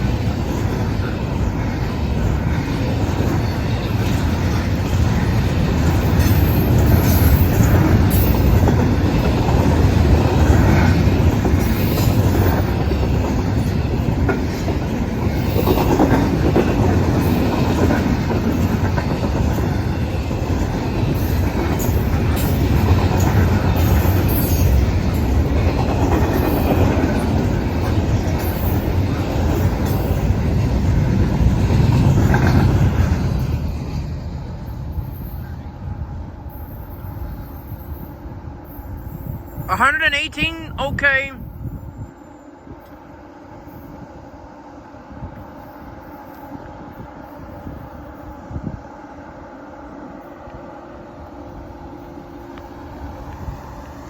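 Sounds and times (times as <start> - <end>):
wheels clattering on rails: 0.0 - 35.7
freight train rumbling past: 0.0 - 54.0.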